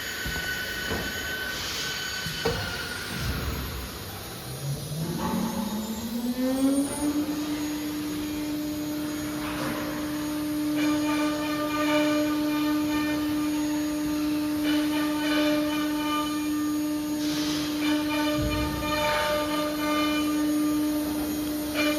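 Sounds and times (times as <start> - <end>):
router spindle whine: 0.0 - 21.9.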